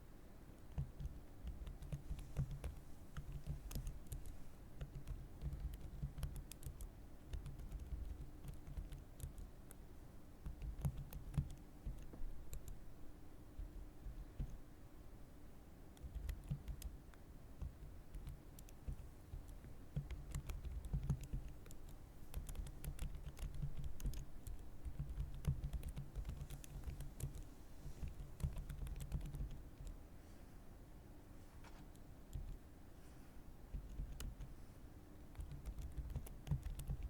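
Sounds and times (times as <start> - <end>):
typing on computer keyboard: 0.7 - 9.8, 10.4 - 12.8, 16.0 - 17.0, 17.6 - 30.0, 31.9 - 32.6, 33.7 - 34.5, 35.3 - 37.0.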